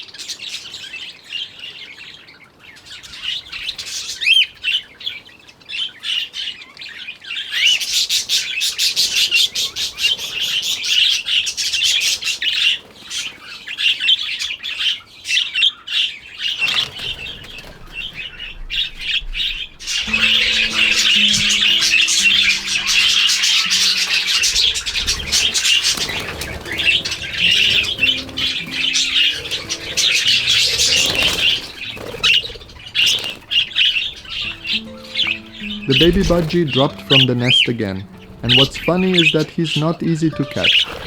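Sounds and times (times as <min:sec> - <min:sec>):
budgerigars chirping: 0:16.6 - 0:41.0
music: 0:19.9 - 0:41.0.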